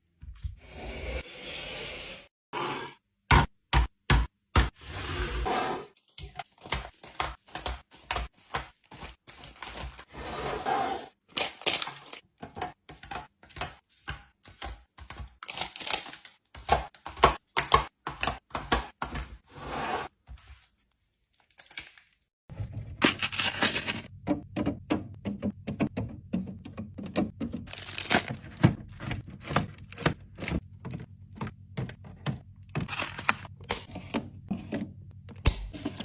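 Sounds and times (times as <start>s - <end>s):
packaging crinkling and tearing: 23.0s - 24.1s, 27.7s - 28.4s, 32.8s - 33.5s.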